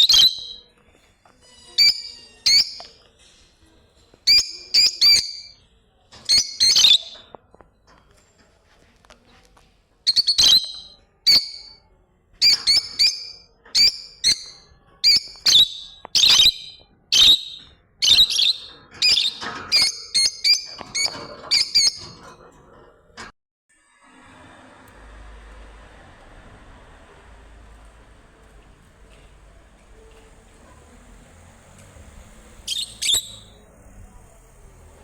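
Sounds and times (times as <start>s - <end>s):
bird calling: 30.4s - 33.7s.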